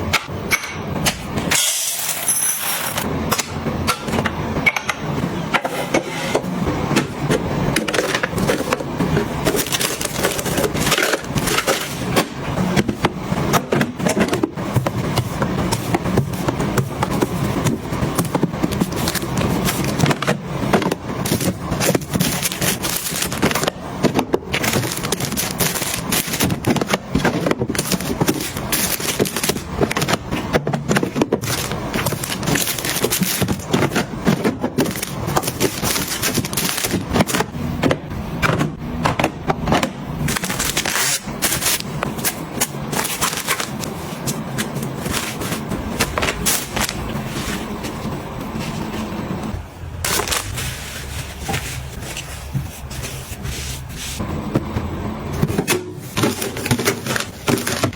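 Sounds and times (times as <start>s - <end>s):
packaging crackling and rustling: 7.8s - 13.0s, 14.4s - 37.5s, 40.3s - 49.1s, 50.0s - 54.0s, 56.0s - 57.9s.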